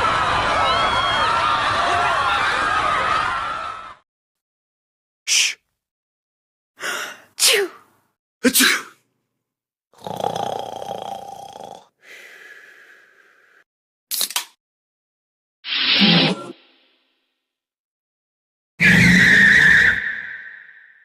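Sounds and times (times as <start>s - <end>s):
sneeze-like sound effect: 5.3s - 5.6s, 7.4s - 7.8s, 8.4s - 9.0s, 15.7s - 16.6s.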